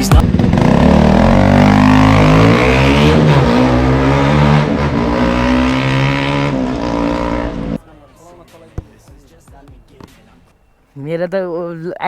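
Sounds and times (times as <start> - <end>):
motorcycle engine revving: 0.0 - 7.8.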